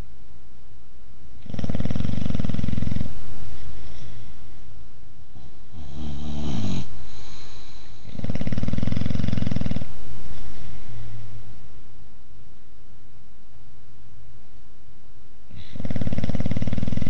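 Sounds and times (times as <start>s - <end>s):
dog snoring: 1.4s - 3.3s, 5.4s - 10.1s, 15.6s - 17.0s.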